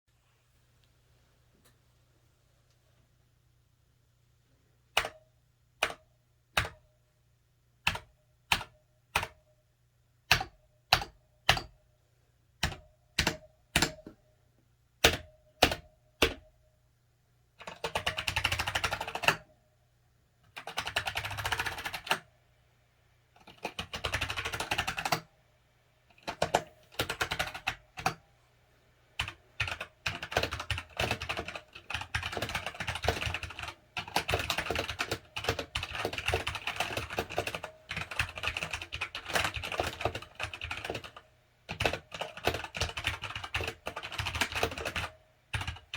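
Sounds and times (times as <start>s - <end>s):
mechanical keyboard typing: 5.0s - 5.2s, 6.6s - 6.8s, 7.9s - 9.4s, 10.3s - 11.8s, 12.6s - 14.0s, 17.6s - 19.4s, 20.5s - 22.3s, 23.4s - 25.3s, 26.1s - 28.2s, 29.2s - 45.9s.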